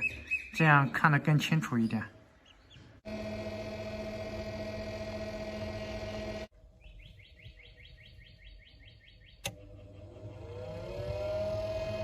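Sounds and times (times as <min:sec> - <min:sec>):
incubator mechanical hum: 0:03.0 - 0:06.5, 0:09.4 - 0:12.0.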